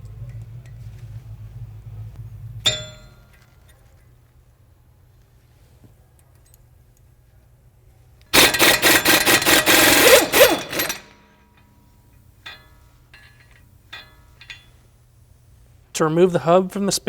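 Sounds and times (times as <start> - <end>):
impact wrench hammering: 2.6 - 3.4, 8.4 - 11.3.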